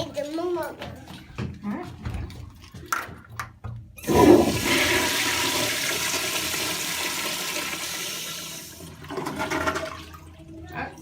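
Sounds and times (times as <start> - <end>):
toilet flushing: 4.0 - 11.0.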